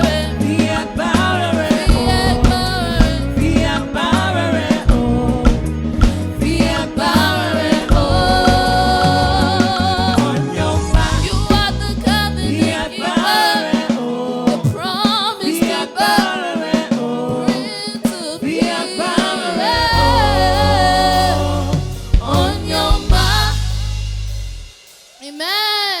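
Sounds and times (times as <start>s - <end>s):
deep bass note: 0.0s - 12.8s, 19.8s - 24.8s
drums hitting: 0.0s - 25.0s
gospel singing with band: 0.0s - 25.9s.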